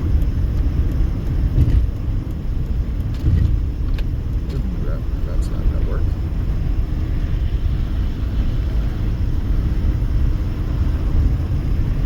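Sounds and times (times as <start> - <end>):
road and tyre rumble: 0.0 - 12.0.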